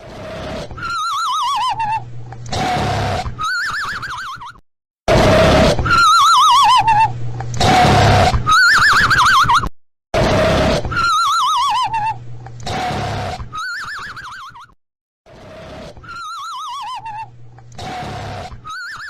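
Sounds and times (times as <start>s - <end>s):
horse whinnying: 0.0s - 19.0s
horse breathy bursts: 17.8s - 18.7s.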